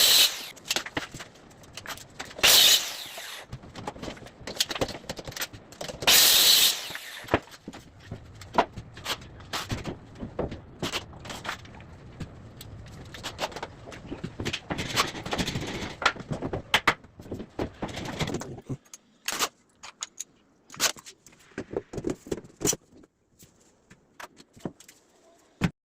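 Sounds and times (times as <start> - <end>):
cabinet parts knocking and clicking: 13.2 - 18.6.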